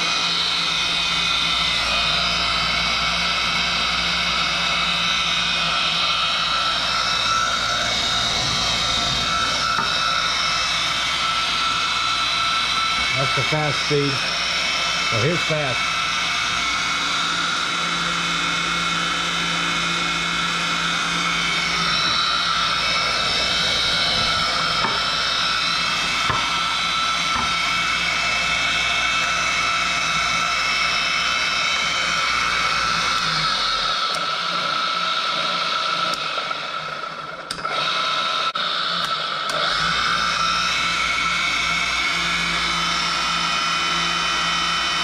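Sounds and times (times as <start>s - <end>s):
low hum: 0.0s - 30.7s
motor and gear whine: 0.0s - 45.0s.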